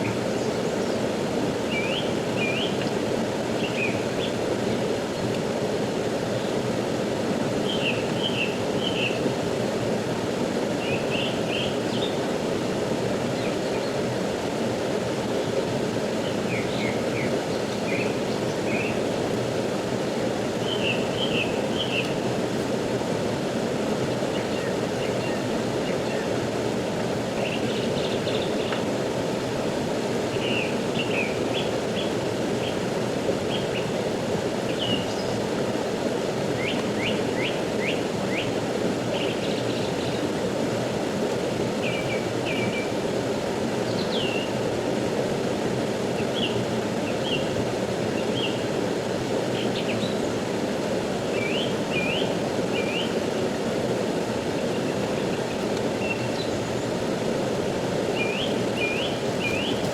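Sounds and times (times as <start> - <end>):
fast-flowing river rushing: 0.0 - 59.9
small birds chirping: 58.1 - 59.9.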